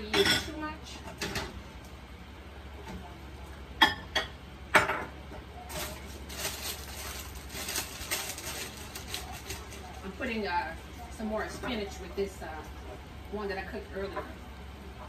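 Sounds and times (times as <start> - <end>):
scraping and stirring: 5.7 - 10.3.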